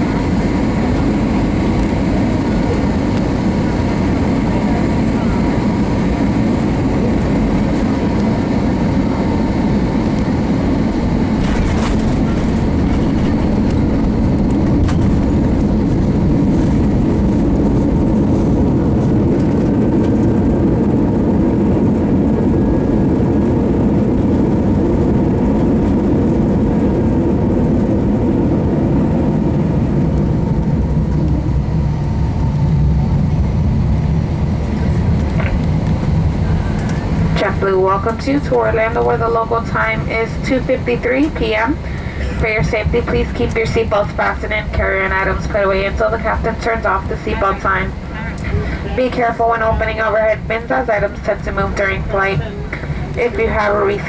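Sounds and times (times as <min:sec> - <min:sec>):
low rumble of engines and wheels: 0:00.0 - 0:54.0.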